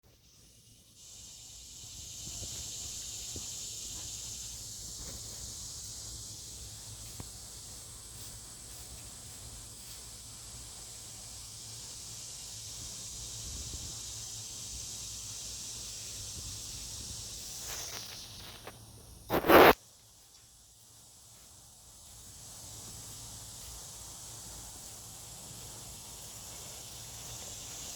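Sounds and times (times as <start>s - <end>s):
steady high hiss: 0.1s - 27.9s
animal scratching at ground: 19.3s - 19.8s.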